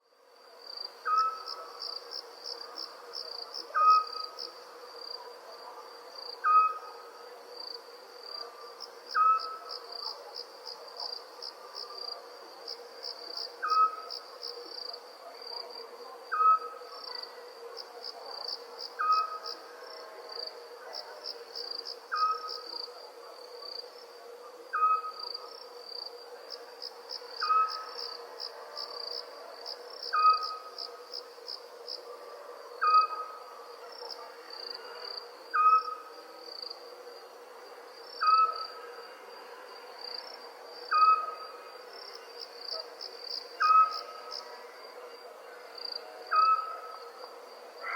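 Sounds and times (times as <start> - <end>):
crickets chirring: 0.3 - 47.9
owl calling: 9.2 - 9.6, 24.7 - 25.2, 35.5 - 36.0.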